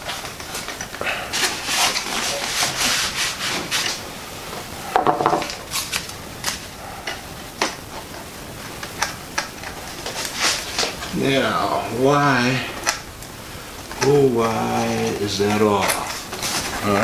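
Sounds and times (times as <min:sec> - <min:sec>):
plastic parts rubbing and scraping: 0:00.0 - 0:04.1, 0:07.8 - 0:11.3.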